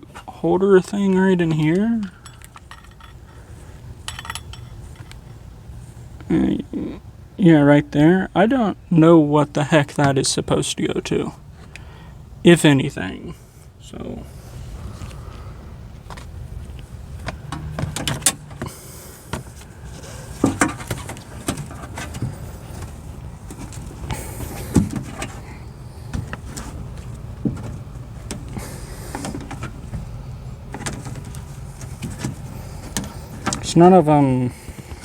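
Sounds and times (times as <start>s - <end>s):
steady low hum: 0.0s - 35.0s
small parts clicking and knocking: 2.0s - 3.2s.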